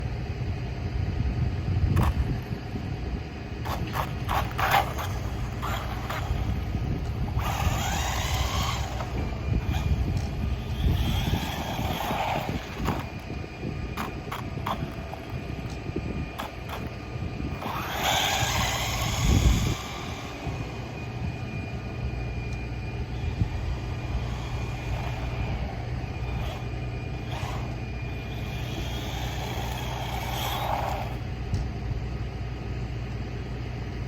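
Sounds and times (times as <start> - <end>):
wind and road noise: 0.0 - 34.0
toy car motor whining: 3.6 - 22.1, 23.0 - 31.4.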